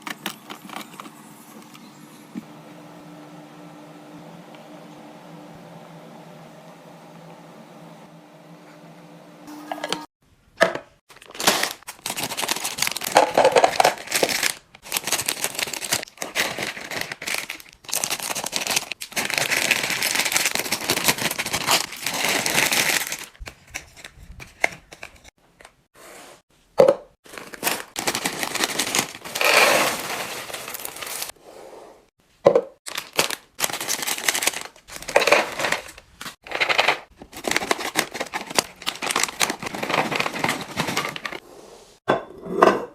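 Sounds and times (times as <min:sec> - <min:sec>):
plastic packaging crinkling: 0:11.1 - 0:25.1, 0:27.2 - 0:31.4, 0:32.9 - 0:41.4.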